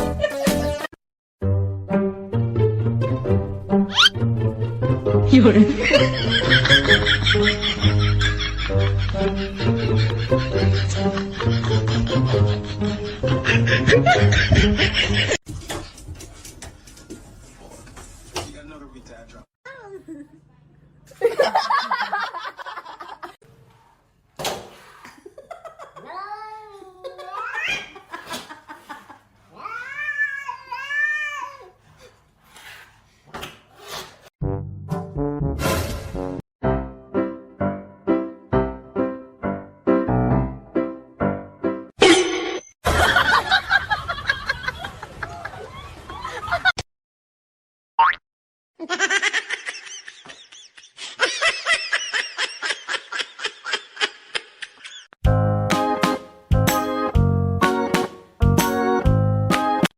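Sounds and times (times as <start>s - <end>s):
music: 0.0s - 15.2s, 34.4s - 41.9s, 55.2s - 59.9s
high-pitched laugh-like calls: 3.9s - 4.1s
cat meowing and yowling: 29.6s - 31.7s.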